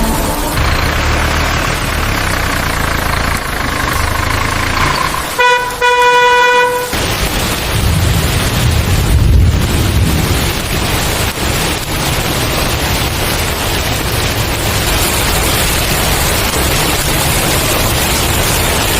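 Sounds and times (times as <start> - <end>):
rain hiss: 0.0 - 18.9
vehicle horn honking: 4.6 - 7.0.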